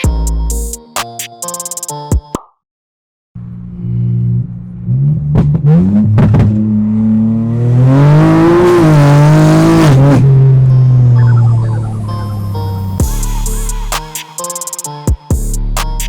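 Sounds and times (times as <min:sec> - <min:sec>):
car engine idling and revving: 0:03.4 - 0:14.0.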